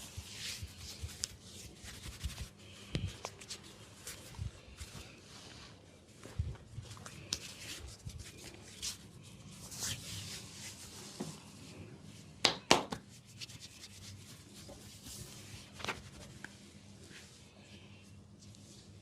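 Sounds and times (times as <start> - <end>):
hands rubbing oiled skin: 0.1 - 5.6, 12.9 - 16.6.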